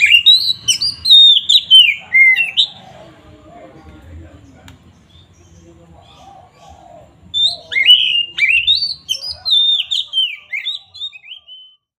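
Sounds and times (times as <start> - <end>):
bird singing whistled notes: 0.0 - 2.9, 7.3 - 12.0.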